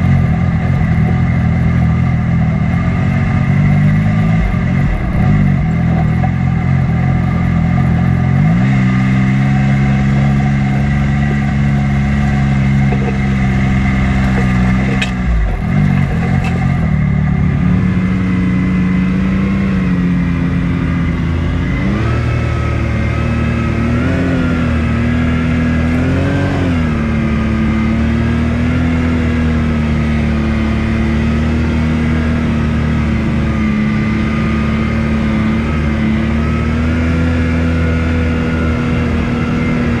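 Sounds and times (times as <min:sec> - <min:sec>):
off-road vehicle engine running: 0:00.0 - 0:40.0.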